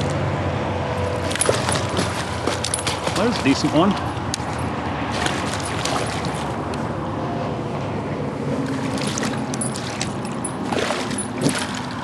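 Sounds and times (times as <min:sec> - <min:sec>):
highway traffic road noise: 0:00.0 - 0:12.0.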